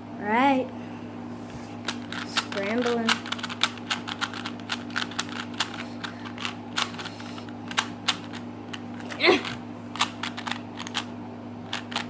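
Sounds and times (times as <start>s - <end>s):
plastic puzzle cube clicking: 2.1s - 7.1s.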